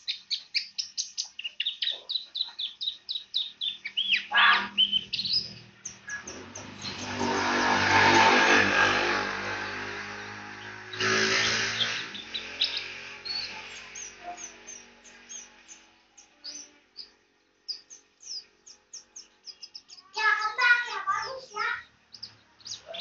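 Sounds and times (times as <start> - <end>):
bird chirping and singing: 0.0 - 23.0
passing vehicle engine: 4.7 - 19.8.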